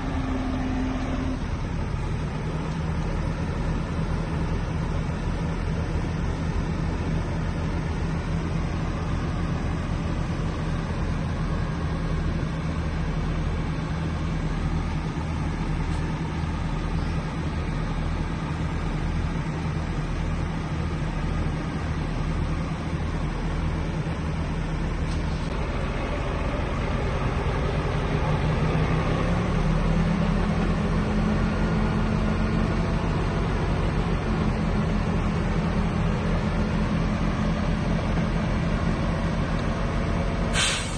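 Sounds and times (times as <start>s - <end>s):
heavy diesel engine running: 0.0s - 40.9s.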